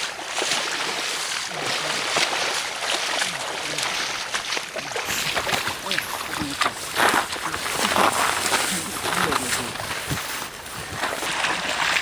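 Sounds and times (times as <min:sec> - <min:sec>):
water rushing and splashing: 0:00.0 - 0:12.0
faint voices: 0:04.8 - 0:11.8.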